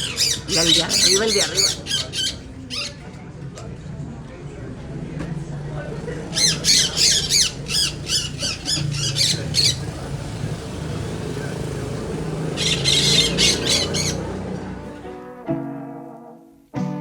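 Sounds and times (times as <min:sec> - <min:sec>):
parrots squawking harshly: 0:00.0 - 0:03.0, 0:06.2 - 0:10.4, 0:11.9 - 0:14.6.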